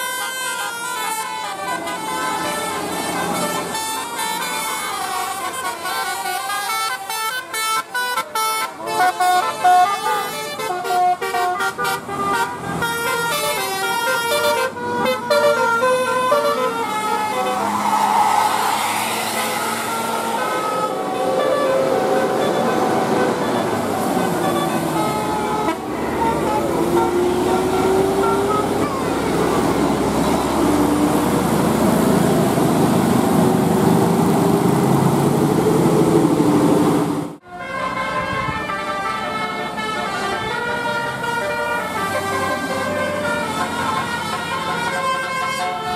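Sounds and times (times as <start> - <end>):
multi-tone bus horn melody: 0.0 - 35.0, 35.8 - 45.9
road noise: 0.0 - 45.9
rushing noise: 16.9 - 37.4.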